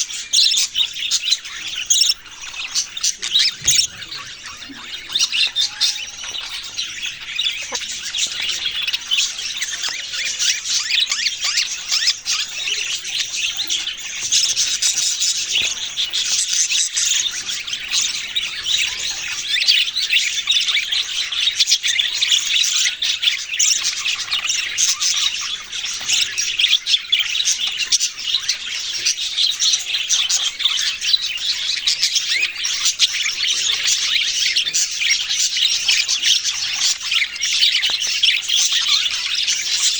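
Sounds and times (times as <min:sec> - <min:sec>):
small birds chirping and squawking: 0:00.0 - 0:39.9.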